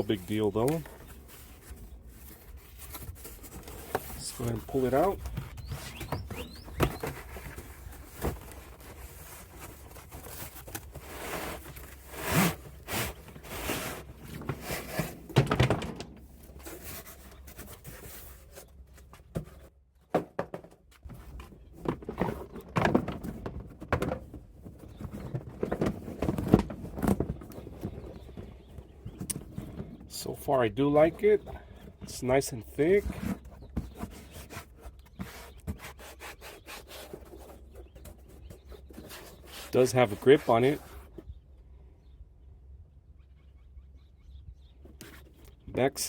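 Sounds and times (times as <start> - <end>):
rubber mat rustling and scraping: 0.0 - 19.7.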